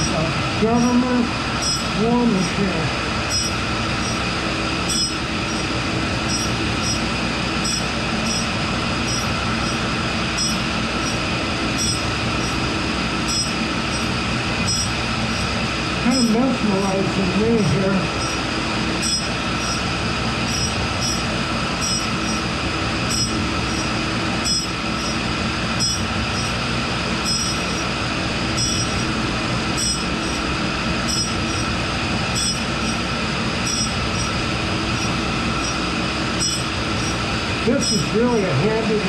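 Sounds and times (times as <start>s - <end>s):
grinder wheel grinding steel: 0.0s - 16.4s, 17.6s - 38.9s.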